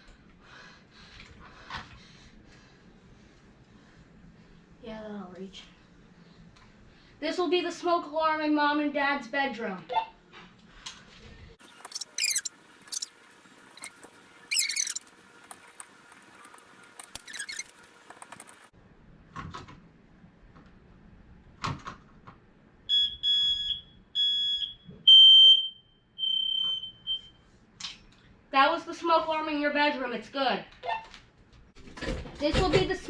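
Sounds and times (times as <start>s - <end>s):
smoke alarm beeping: 22.9s - 27.3s.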